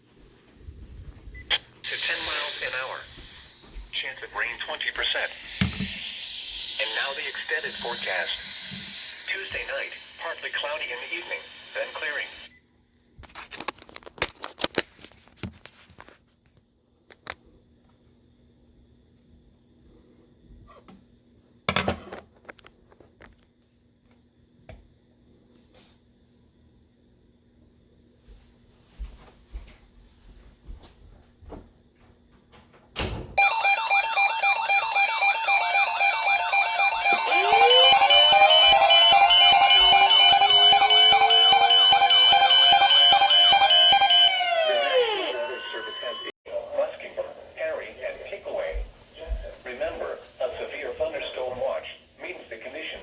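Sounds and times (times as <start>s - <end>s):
weather alert radio alarms: 1.5s - 12.5s, 33.4s - 46.4s
rising siren-like tone: 33.4s - 46.3s.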